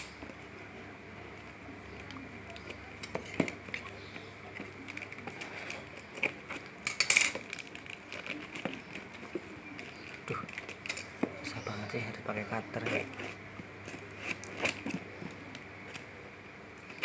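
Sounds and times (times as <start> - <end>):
packaging clicks and rustles: 1.3 - 11.3, 12.7 - 17.0
loud packaging crinkling: 4.6 - 11.2.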